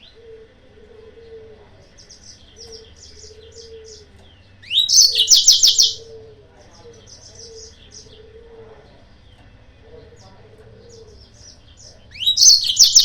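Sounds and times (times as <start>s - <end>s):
canary song phrase: 0.0s - 13.0s
canary chirping: 2.0s - 6.1s, 9.2s - 13.0s.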